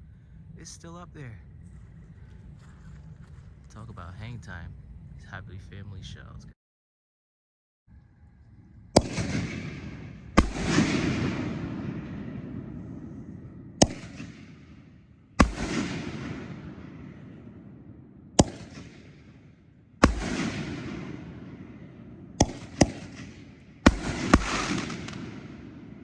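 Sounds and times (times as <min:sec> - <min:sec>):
rumble of firework booms: 0:08.9 - 0:26.0
firework shells booming: 0:09.0 - 0:26.0.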